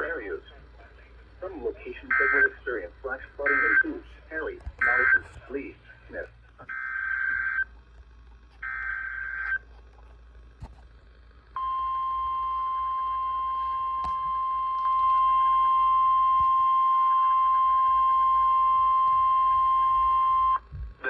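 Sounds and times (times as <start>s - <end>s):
steady alarm tone: 1.9s - 4.1s, 6.6s - 7.7s, 8.6s - 9.7s, 11.5s - 20.7s.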